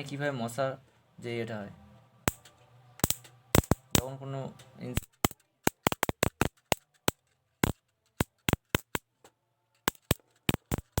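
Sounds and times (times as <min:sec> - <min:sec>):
electric mesh sparking snaps: 0:02.3 - 0:09.1, 0:09.9 - 0:11.0.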